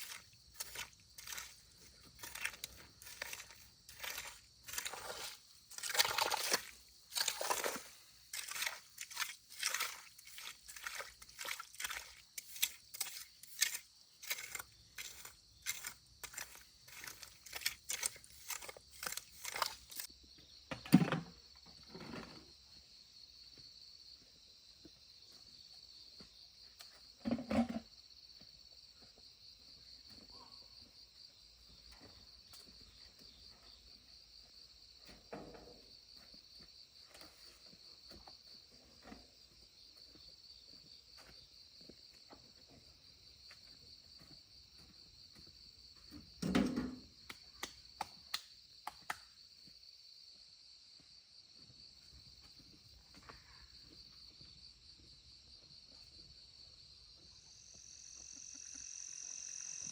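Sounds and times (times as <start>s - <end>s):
high insect chirring: 57.4s - 59.9s.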